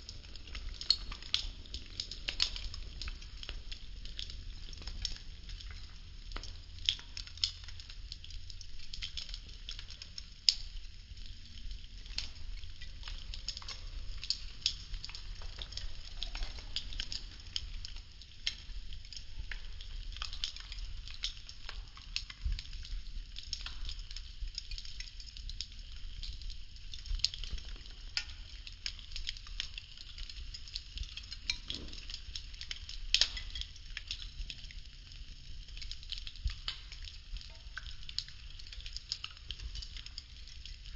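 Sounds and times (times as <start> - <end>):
low steady rumble: 0.0 - 24.5
burning wood crackling: 0.0 - 40.9.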